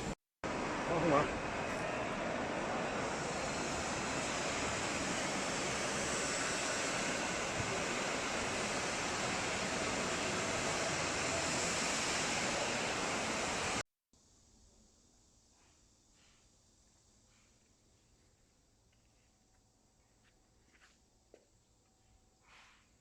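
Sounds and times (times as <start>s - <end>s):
factory machinery hissing: 0.0s - 13.8s.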